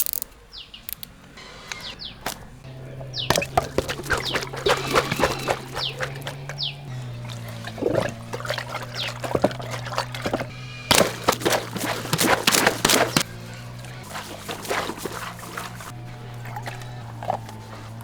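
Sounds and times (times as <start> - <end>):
sharp splashes and clicks: 0.0 - 18.0
background music with low drone: 0.5 - 18.0
water pouring and splashing: 2.2 - 18.0.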